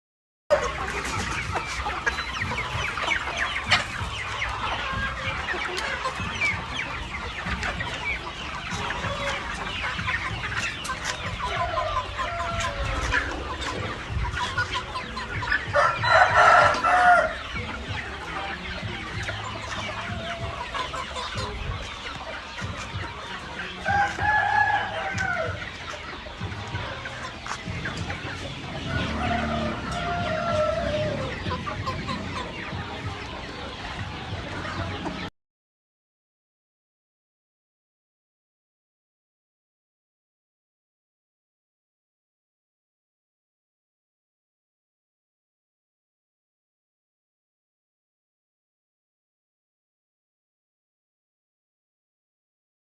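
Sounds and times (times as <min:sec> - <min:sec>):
chicken drawn-out call: 0:00.5 - 0:22.2, 0:22.8 - 0:32.5
chickens clucking: 0:00.5 - 0:35.3.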